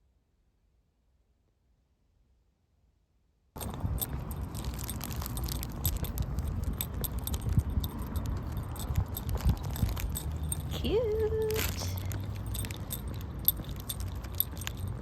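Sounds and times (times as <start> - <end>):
handling noise rumble: 3.6 - 15.0
jingling metallic clinks: 3.6 - 15.0.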